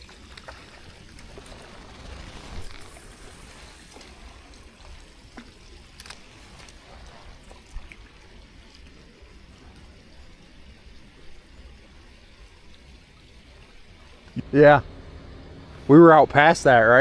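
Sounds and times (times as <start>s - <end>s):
faint clicks: 0.0s - 10.4s
water trickling: 0.0s - 17.0s.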